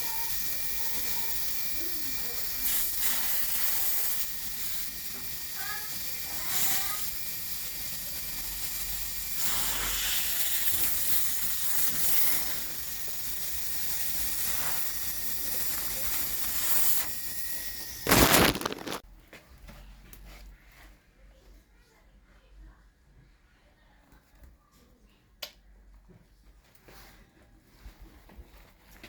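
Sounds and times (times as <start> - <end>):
pressurized gas hissing: 0.0 - 19.0.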